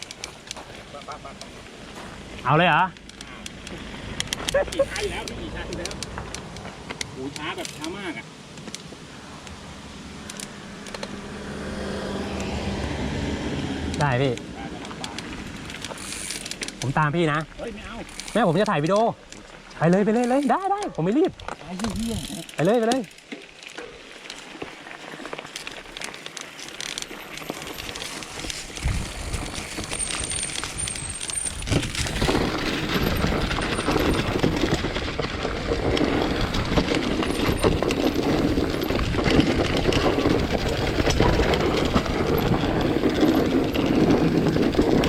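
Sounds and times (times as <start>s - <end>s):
bicycle tyre rumble: 0.0s - 45.0s
clicks and rattles: 13.9s - 45.0s
wind noise: 27.8s - 45.0s.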